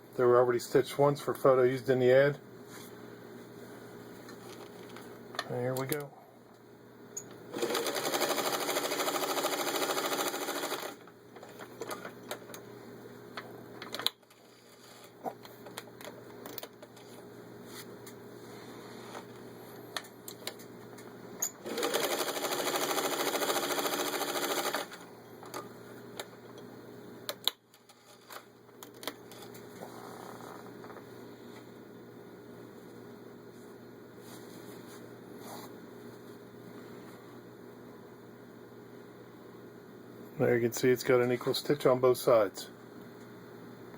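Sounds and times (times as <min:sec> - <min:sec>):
sewing machine stitching: 0:07.5 - 0:11.0, 0:21.6 - 0:25.0.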